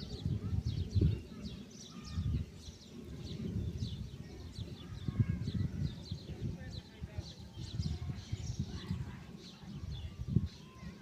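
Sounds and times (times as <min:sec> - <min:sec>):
birds chirping: 0:00.0 - 0:11.0.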